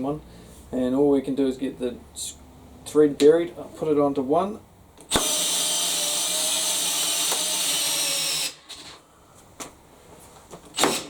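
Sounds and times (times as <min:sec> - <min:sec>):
cordless drill driving screw: 0:05.1 - 0:09.0, 0:10.7 - 0:11.0.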